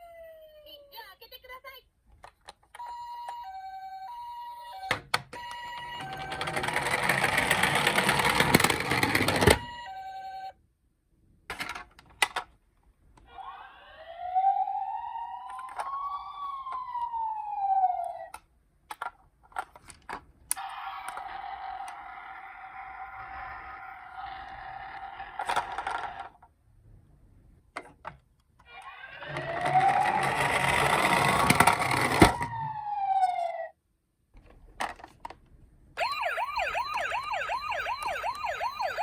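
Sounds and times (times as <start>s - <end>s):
siren wail: 0.0s - 0.8s, 13.3s - 18.4s, 20.6s - 25.4s, 28.7s - 33.8s, 36.0s - 39.0s
toy two-tone siren: 2.8s - 7.4s, 8.1s - 10.6s, 13.3s - 18.4s, 20.5s - 26.2s, 28.7s - 33.7s, 36.0s - 39.0s
steady siren tone: 13.3s - 18.3s, 32.3s - 33.7s, 36.0s - 39.0s.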